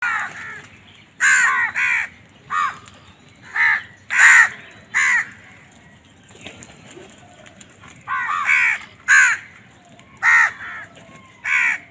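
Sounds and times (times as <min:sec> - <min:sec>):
crow cawing: 0:00.0 - 0:00.6, 0:01.2 - 0:02.8, 0:03.5 - 0:05.4, 0:08.1 - 0:09.6, 0:10.2 - 0:11.9.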